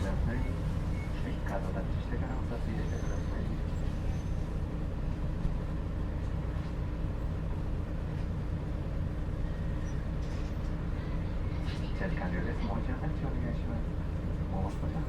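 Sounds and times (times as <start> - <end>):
bus engine drone: 0.0 - 15.0.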